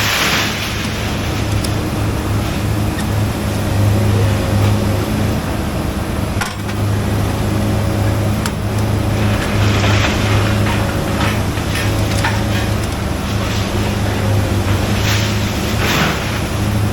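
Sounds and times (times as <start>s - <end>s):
vehicle engine idling: 0.0s - 16.9s
metallic clank: 6.4s - 7.0s.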